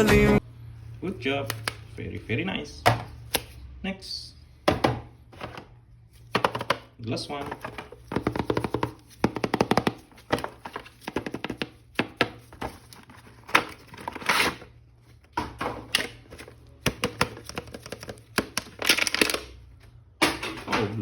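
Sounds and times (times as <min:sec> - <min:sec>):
clicks and taps on plastic packaging: 0:06.3 - 0:06.9, 0:07.5 - 0:12.7, 0:16.8 - 0:19.4.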